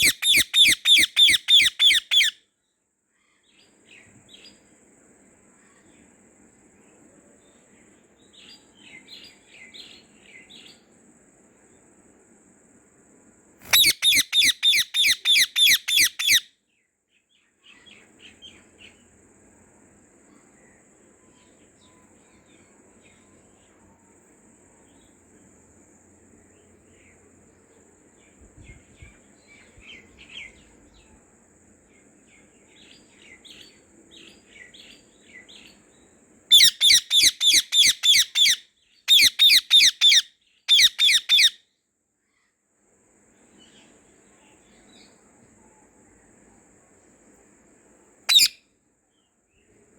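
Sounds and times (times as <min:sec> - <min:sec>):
parrot shrill calls: 0:00.0 - 0:02.4, 0:13.6 - 0:16.5, 0:36.5 - 0:41.6, 0:48.3 - 0:48.6
soft parrot chirps: 0:00.0 - 0:02.4, 0:13.6 - 0:16.5, 0:36.5 - 0:41.6, 0:48.3 - 0:48.7.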